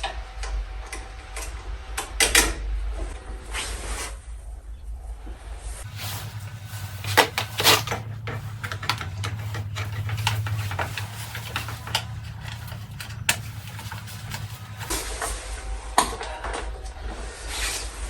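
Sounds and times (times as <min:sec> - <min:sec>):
small metal parts clinking: 0:05.9 - 0:15.1.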